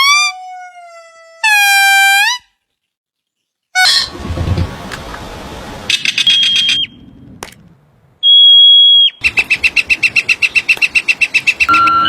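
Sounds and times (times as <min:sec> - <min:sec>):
bird calls: 0:05.9 - 0:07.0, 0:08.2 - 0:12.0.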